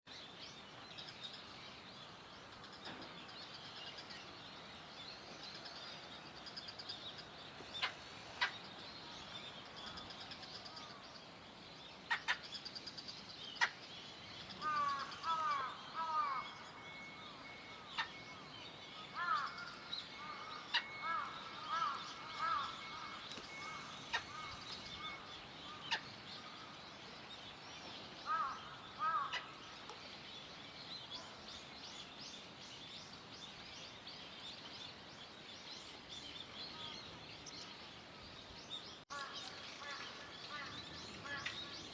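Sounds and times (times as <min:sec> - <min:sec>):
gulls chattering: 0:19.1 - 0:26.8.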